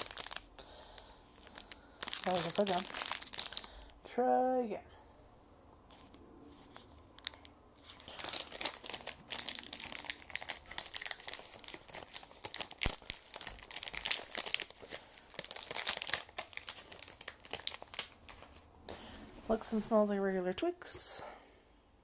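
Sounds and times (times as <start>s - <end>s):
plastic wrapper crinkling and tearing: 0.0s - 4.0s, 5.9s - 18.8s.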